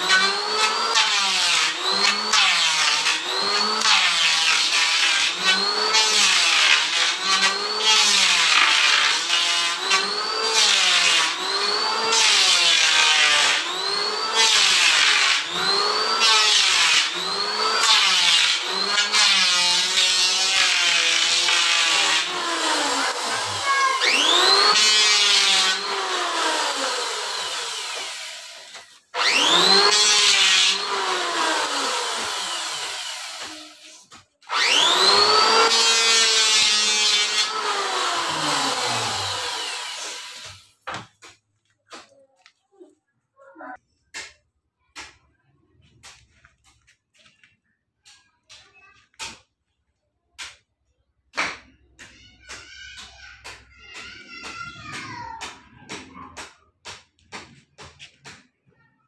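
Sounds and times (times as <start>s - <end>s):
electric planer cutting wood: 0.0s - 40.7s.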